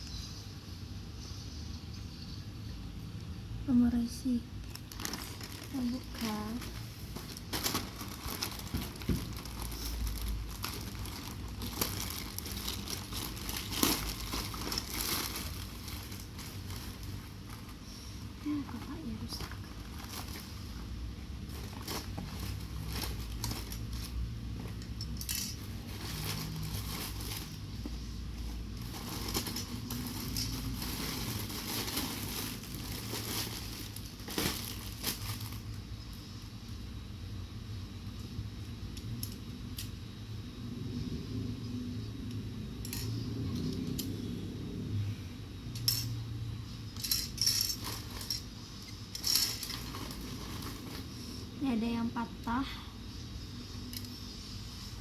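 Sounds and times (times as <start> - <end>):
steady low hum: 0.0 - 55.0
small hard items clattering: 4.6 - 35.8, 47.0 - 51.2.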